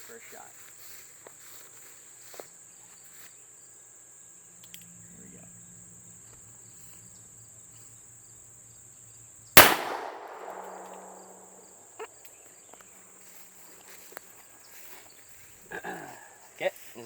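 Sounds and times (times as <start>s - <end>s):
insects trilling: 0.2s - 17.0s
revolver gunshot with echo: 9.6s - 11.4s.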